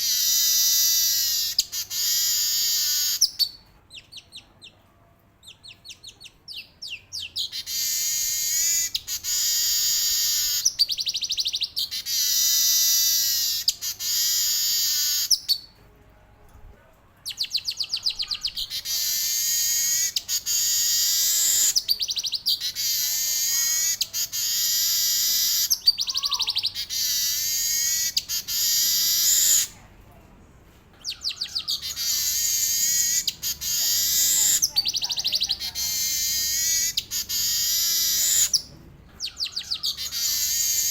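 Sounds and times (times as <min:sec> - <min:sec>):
weaver bird singing trill: 0:05.4 - 0:15.7, 0:17.3 - 0:29.7, 0:31.0 - 0:40.9.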